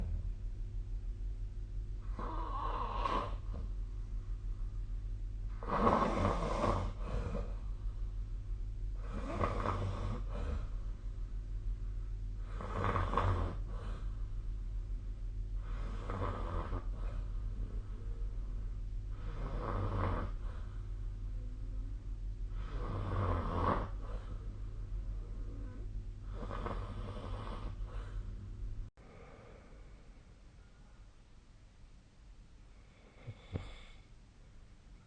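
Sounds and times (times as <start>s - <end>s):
low steady hum: 0.0s - 35.0s
person snoring: 2.0s - 3.7s, 5.5s - 7.6s, 9.0s - 10.8s, 12.4s - 14.1s, 15.6s - 17.8s, 19.1s - 20.7s, 22.5s - 24.5s, 25.2s - 28.2s.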